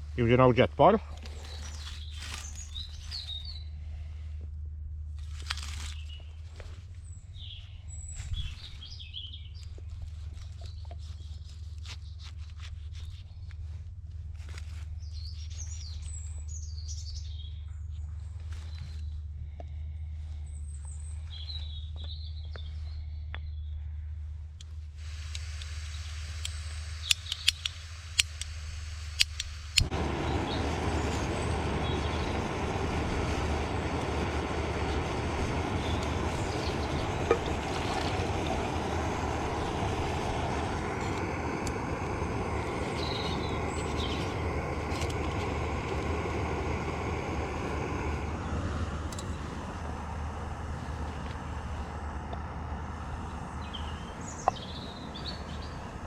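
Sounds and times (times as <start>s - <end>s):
birds chirping: 0.0s - 3.9s, 5.9s - 12.2s, 15.0s - 23.9s, 25.9s - 27.8s, 29.8s - 56.0s
igniter clicks: 24.6s - 55.8s
gas hissing: 24.6s - 56.0s
gas burner rushing: 24.7s - 56.0s.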